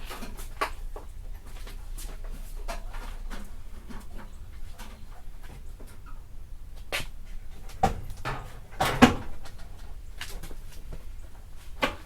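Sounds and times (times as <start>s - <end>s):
car body parts knocking: 7.7s - 9.6s.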